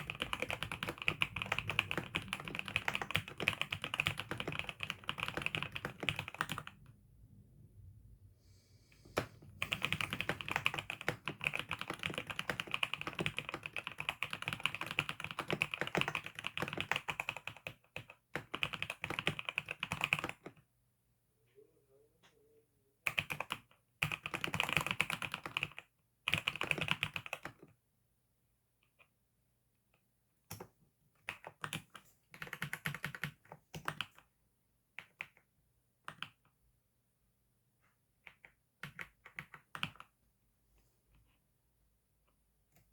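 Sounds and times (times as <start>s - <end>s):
keyboard typing: 0.0s - 6.9s, 9.1s - 20.6s, 23.1s - 27.6s, 38.2s - 40.1s.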